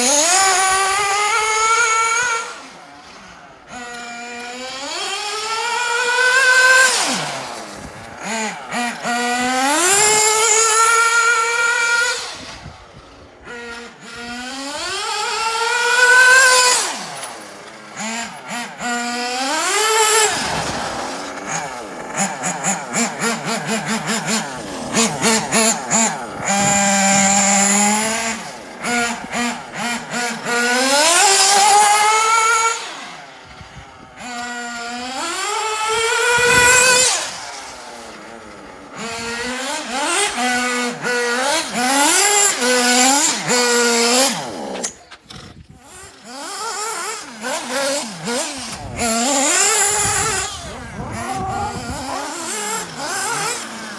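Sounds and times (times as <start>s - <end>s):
model car engine revving: 0.0s - 53.9s
stuttering throttle blips: 13.2s - 53.9s.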